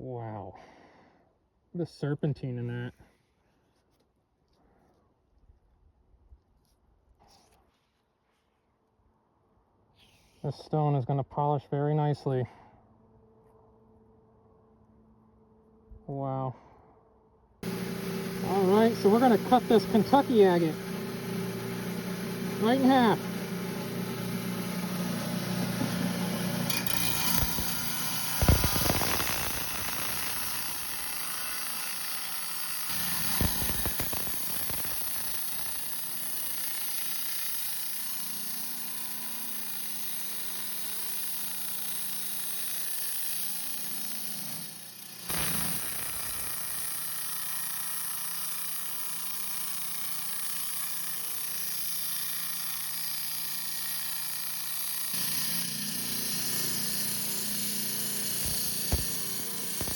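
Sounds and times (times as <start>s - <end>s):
rock saw grinding stone: 17.6s - 59.9s.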